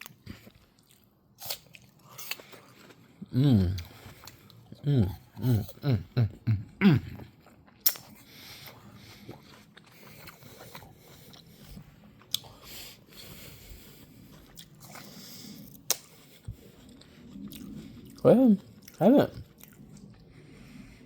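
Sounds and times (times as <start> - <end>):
chewing crunchy food: 0.0 - 21.0
sharp bite clicks: 7.8 - 8.1.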